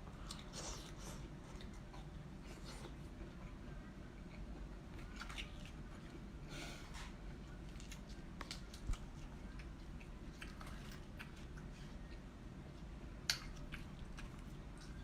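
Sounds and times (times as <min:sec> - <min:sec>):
shells cracking and chewing: 0:04.2 - 0:06.2, 0:07.5 - 0:12.2, 0:13.2 - 0:15.0.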